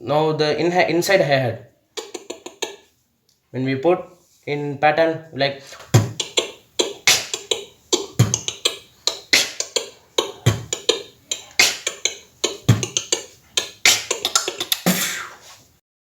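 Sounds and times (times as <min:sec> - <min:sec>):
beatboxing tongue clicks: 0:02.0 - 0:02.9, 0:05.8 - 0:15.4
beatboxed bass kick: 0:05.9 - 0:15.4.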